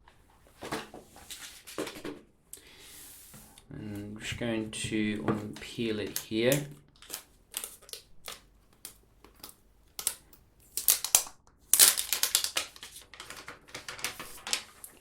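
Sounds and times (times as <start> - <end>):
plastic film peeling and crinkling: 7.0 - 15.0.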